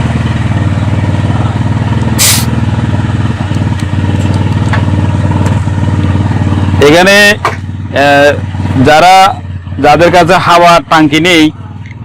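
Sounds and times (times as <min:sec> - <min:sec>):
sharp hiss of air: 0:02.2 - 0:02.6.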